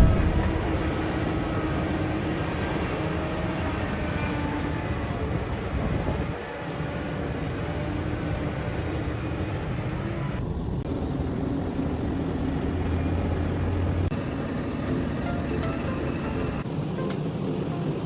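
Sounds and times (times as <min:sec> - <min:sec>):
excavator diesel engine running: 0:14.7 - 0:18.0.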